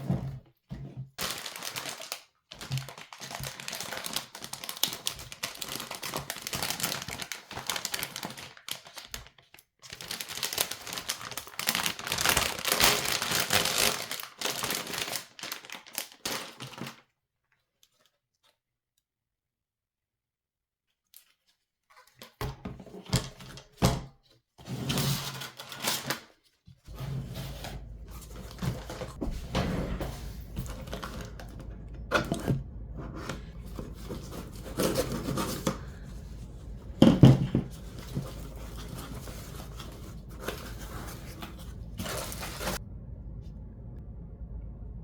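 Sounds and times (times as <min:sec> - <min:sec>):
rustling and scraping packaging: 0:00.0 - 0:18.6, 0:21.0 - 0:42.8
steady low hum: 0:26.9 - 0:45.0.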